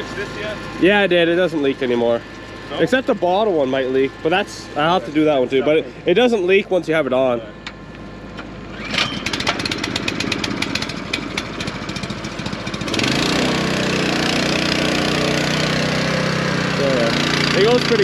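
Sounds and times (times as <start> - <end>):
small gasoline engine running: 0.0 - 18.0.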